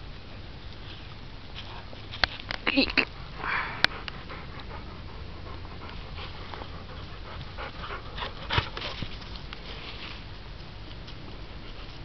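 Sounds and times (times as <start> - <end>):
dog panting: 3.0 - 9.3.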